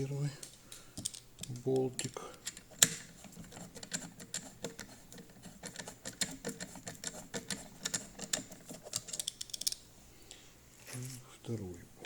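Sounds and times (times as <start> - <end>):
metal bolt clicking and tapping: 3.8 - 9.8.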